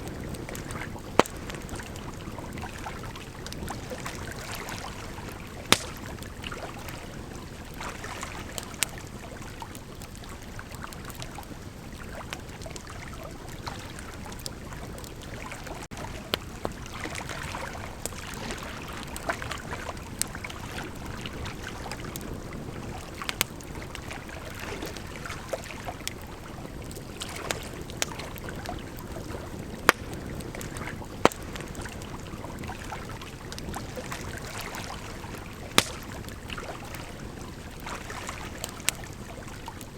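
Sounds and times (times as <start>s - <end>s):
bonfire flames burning: 0.0s - 39.9s
fire crackling and popping: 0.0s - 39.9s
fire snapping: 0.1s - 6.9s, 23.2s - 24.1s, 25.9s - 36.7s.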